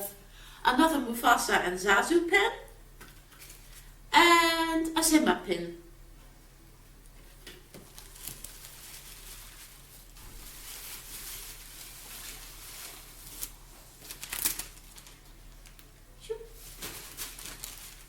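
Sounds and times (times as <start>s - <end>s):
packaging crinkling and rustling: 7.6s - 16.0s, 16.6s - 18.0s.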